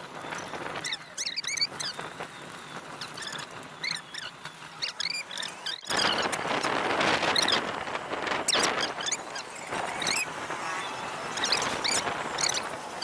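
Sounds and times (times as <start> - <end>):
rush of noise: 4.6 - 13.0.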